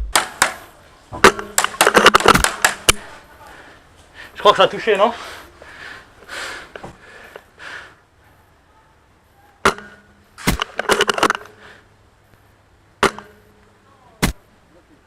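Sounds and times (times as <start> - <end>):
airsoft rifle firing: 0.0 - 3.1.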